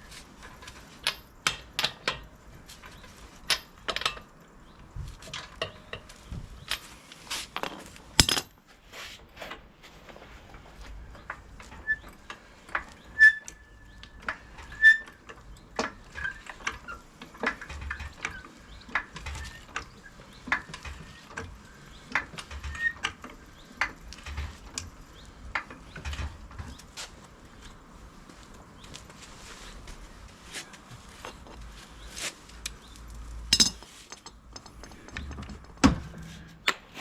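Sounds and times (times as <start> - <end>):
metallic clicks of hand tools: 33.5 - 35.2.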